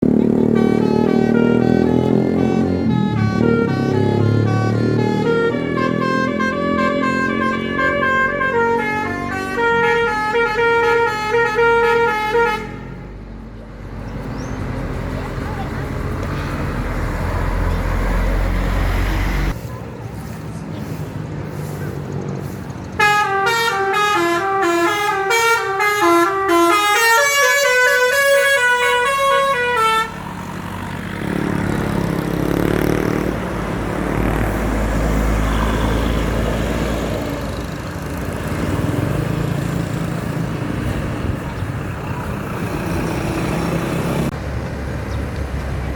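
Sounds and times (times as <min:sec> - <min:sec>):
bus engine: 0:00.0 - 0:45.9
road noise: 0:00.0 - 0:45.9
bus horn playing a tune: 0:00.2 - 0:13.2, 0:23.0 - 0:30.8.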